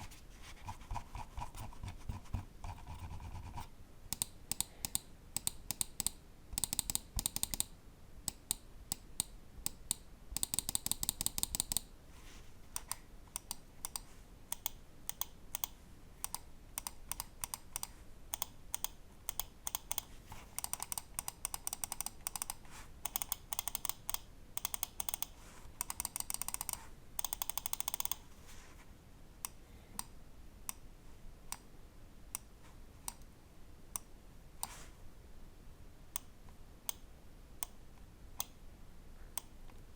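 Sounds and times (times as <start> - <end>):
mouse switches clicking: 12.8 - 28.2.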